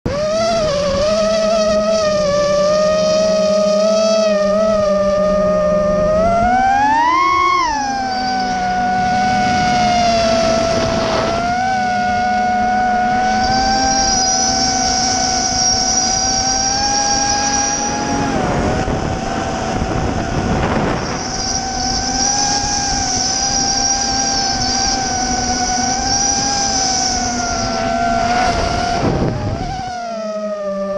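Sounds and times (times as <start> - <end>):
drone motors whining: 0.1 - 30.9
higher whine: 0.1 - 30.9.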